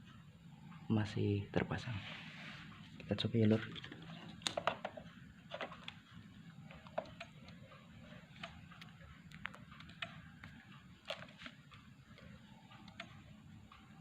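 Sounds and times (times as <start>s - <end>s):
low steady hum: 0.0s - 14.0s
light clicks and taps: 6.7s - 13.9s.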